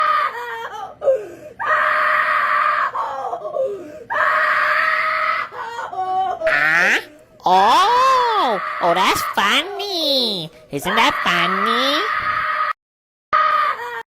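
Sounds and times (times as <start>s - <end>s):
person screaming: 6.4s - 9.4s.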